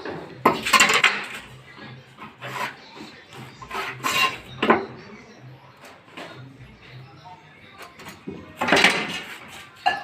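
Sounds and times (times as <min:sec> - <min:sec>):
wood being scraped by hand: 0:02.2 - 0:04.5.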